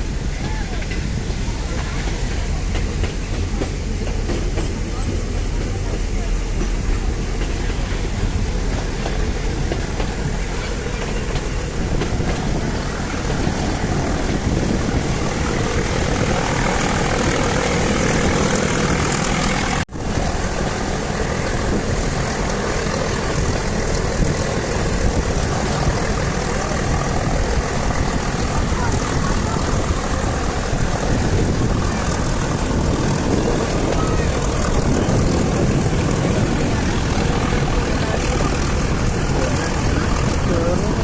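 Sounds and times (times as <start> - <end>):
train running noise: 0.0 - 41.0.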